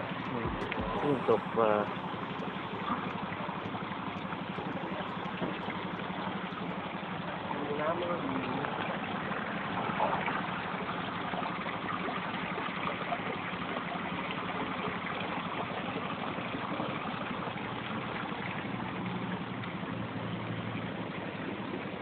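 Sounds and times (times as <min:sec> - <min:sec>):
vehicle engine and road noise: 0:00.0 - 0:11.5, 0:17.5 - 0:22.0.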